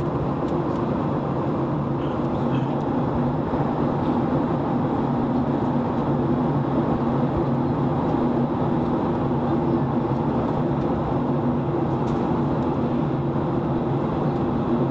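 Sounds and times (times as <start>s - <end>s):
jet engine drone: 0.0s - 14.9s
rushing airflow: 0.0s - 14.9s.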